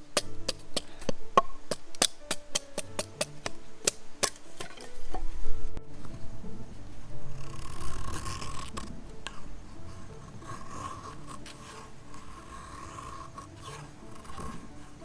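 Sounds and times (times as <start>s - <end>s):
scraping on wood: 6.0s - 15.0s.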